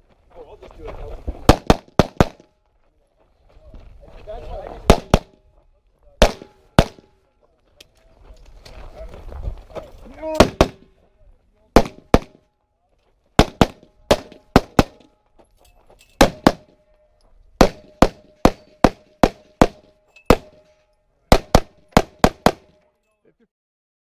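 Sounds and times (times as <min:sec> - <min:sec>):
handgun shots: 0:01.5 - 0:02.5, 0:04.9 - 0:05.4, 0:06.2 - 0:07.1, 0:10.4 - 0:10.9, 0:11.8 - 0:12.4, 0:13.4 - 0:15.1, 0:16.2 - 0:16.8, 0:17.6 - 0:20.6, 0:21.3 - 0:22.8.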